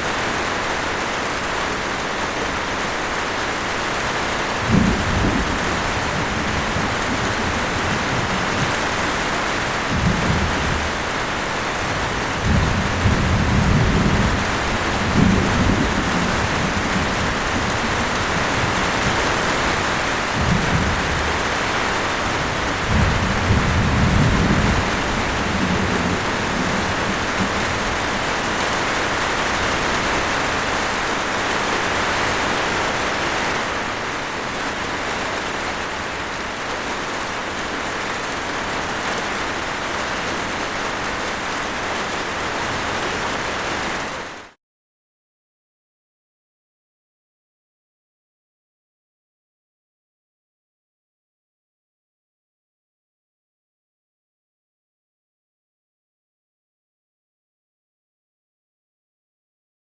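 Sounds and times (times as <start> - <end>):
steady rain falling: 0.0 - 44.6
low rolls of thunder: 4.4 - 30.8.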